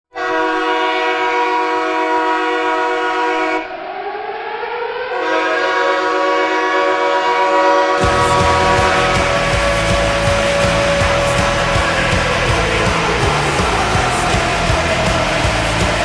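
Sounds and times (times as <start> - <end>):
goal horn blaring: 0.1 - 3.7, 5.1 - 16.0
rising wail: 8.0 - 16.0.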